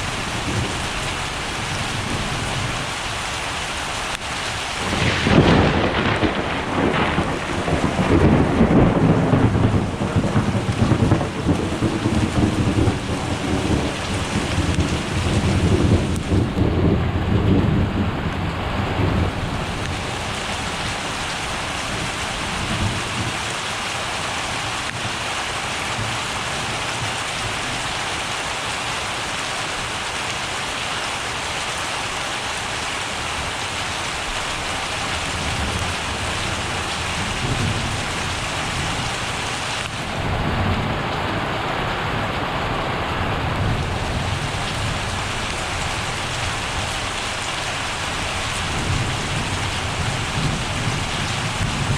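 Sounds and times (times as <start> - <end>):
steady rain falling: 0.0 - 51.9
thunder rumbling: 4.6 - 23.4, 34.2 - 42.2, 42.8 - 51.9.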